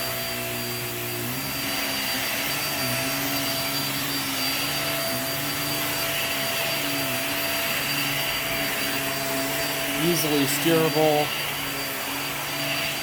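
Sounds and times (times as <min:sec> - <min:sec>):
vacuum cleaner running on carpet: 0:00.0 - 0:13.0.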